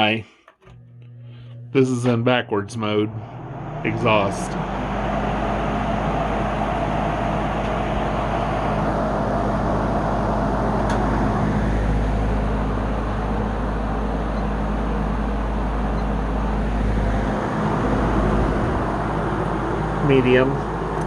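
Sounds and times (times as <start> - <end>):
low motor hum: 0.0 - 21.0
box fan air rushing: 3.2 - 14.2, 15.8 - 21.0.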